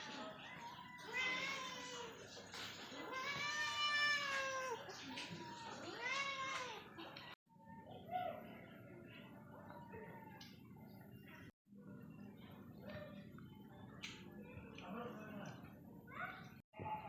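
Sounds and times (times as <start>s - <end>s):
cat meowing: 0.5s - 2.2s, 3.0s - 6.9s.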